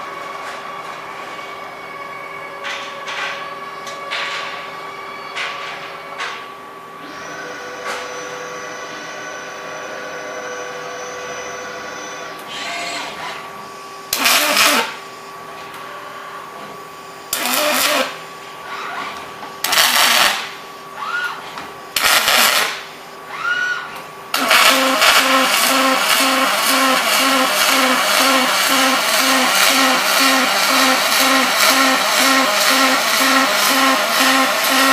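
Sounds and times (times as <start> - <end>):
welding arc bursts: 14.1 - 15.0, 17.3 - 18.2, 19.6 - 20.6, 22.0 - 22.9, 24.3 - 34.9.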